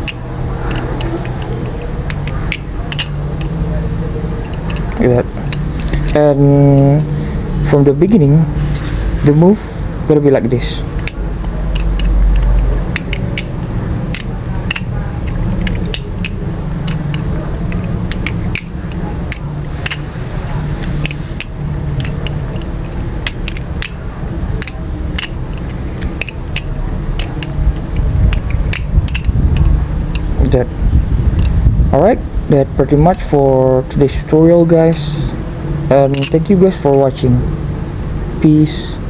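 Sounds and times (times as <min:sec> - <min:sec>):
steady low hum: 0:00.0 - 0:39.0
butterfly knife clicking: 0:11.0 - 0:20.1, 0:20.8 - 0:30.3, 0:36.1 - 0:36.4.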